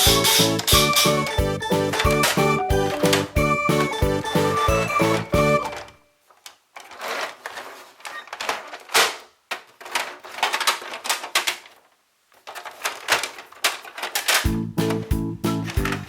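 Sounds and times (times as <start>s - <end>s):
plastic toy clicking and rattling: 6.8s - 11.8s, 12.4s - 14.5s.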